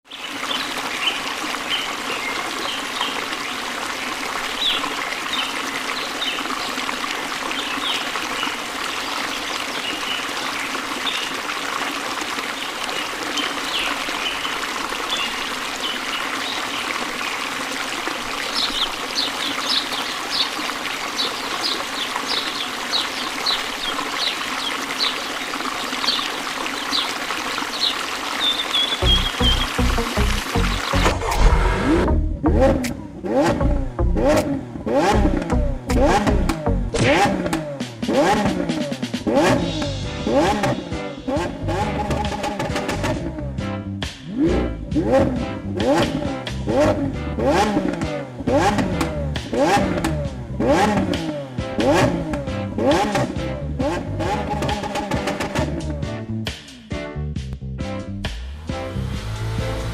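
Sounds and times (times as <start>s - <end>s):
water trickling: 0.1s - 31.2s.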